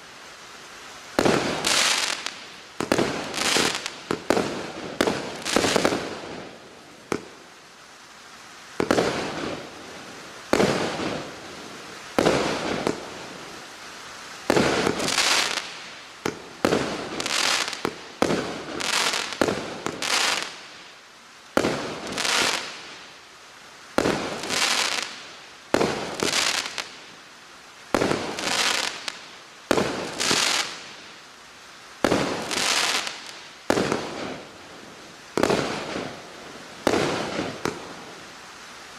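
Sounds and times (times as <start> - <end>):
hissing firework tail: 0.0 - 31.2, 31.9 - 38.9
fireworks shots firing: 10.5 - 11.2, 12.2 - 13.1, 29.7 - 30.7, 32.0 - 34.4, 35.4 - 36.2, 36.8 - 38.0.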